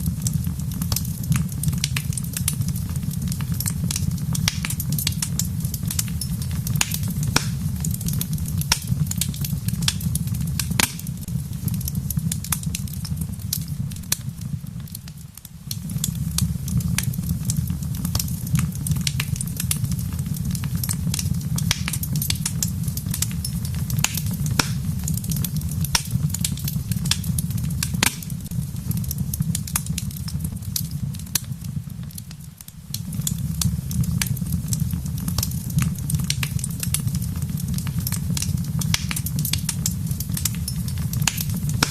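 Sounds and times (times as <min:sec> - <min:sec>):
fire low rumble: 0:00.0 - 0:41.9
wood fire crackling and popping: 0:00.0 - 0:41.9.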